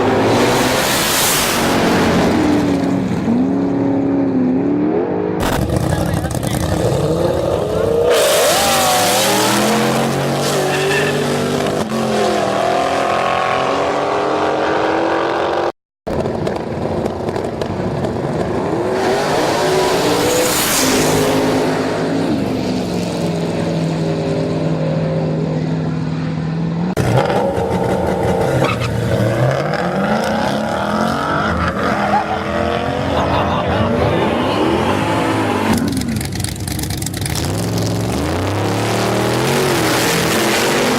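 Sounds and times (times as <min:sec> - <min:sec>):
racing cars accelerating: 0:00.0 - 0:15.7, 0:18.6 - 0:24.4, 0:27.0 - 0:36.2, 0:37.4 - 0:40.9
tire squeal: 0:10.4 - 0:11.5, 0:27.6 - 0:29.3.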